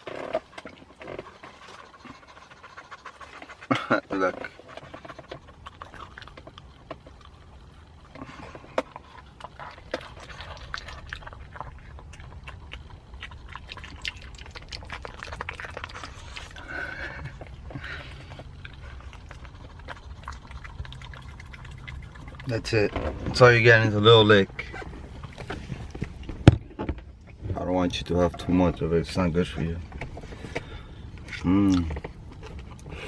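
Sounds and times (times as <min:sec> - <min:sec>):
dog licking wet clicks: 0:08.9 - 0:16.6, 0:18.2 - 0:22.9.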